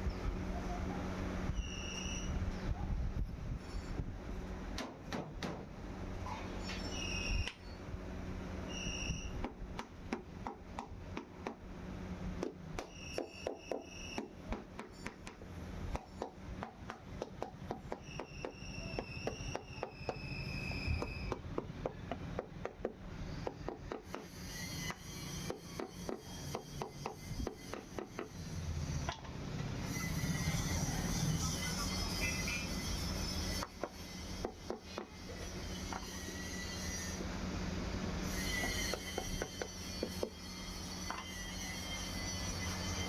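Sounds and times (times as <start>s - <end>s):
high squeak-like tone: 1.5s - 2.8s, 3.6s - 4.0s, 6.2s - 7.8s, 8.6s - 9.4s, 12.8s - 15.3s, 17.8s - 21.4s, 23.2s - 29.1s, 29.8s - 37.3s, 38.2s - 43.0s.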